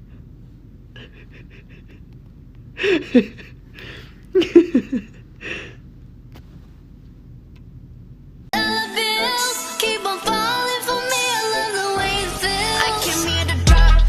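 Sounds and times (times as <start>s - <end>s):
low steady hum: 0.0s - 8.5s.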